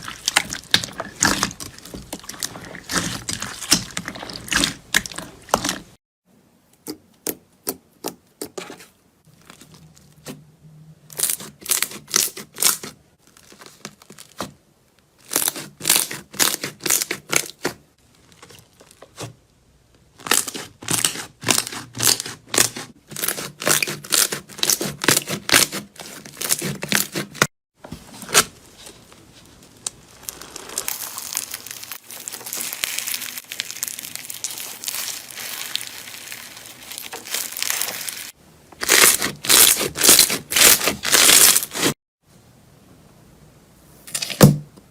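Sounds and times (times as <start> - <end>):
slime crackling and popping: 0.1 - 5.9, 29.5 - 41.9.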